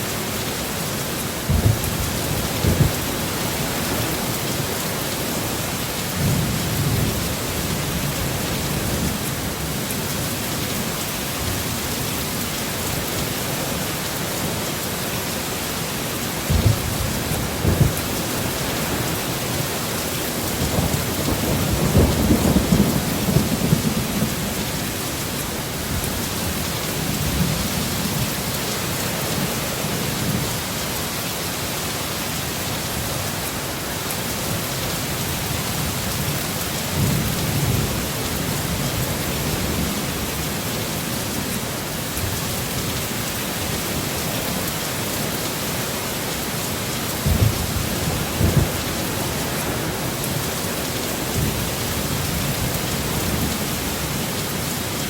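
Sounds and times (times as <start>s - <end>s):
heavy rain downpour: 0.0s - 55.0s
rolling thunder: 1.4s - 4.2s, 16.5s - 24.9s, 47.2s - 50.6s.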